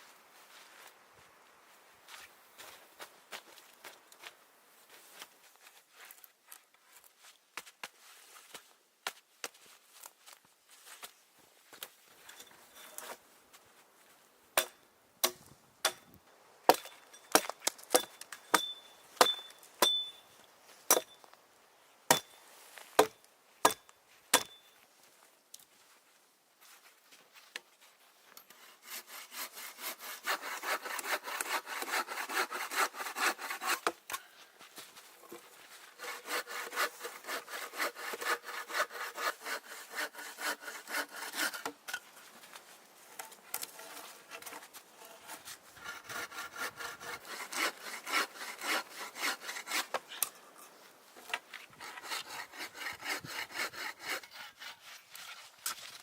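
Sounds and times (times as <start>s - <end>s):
hand saw cutting wood: 28.5s - 34.0s, 35.3s - 42.0s, 43.2s - 56.0s.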